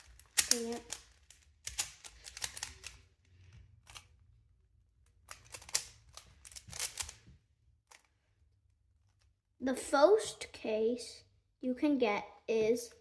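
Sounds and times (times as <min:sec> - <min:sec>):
puzzle cube layers clicking: 0:00.0 - 0:03.1, 0:05.1 - 0:07.2.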